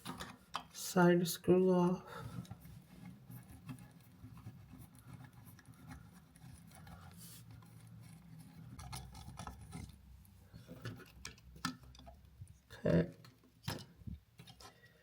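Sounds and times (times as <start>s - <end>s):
screwdriver scraping and clicking: 2.4s - 10.0s.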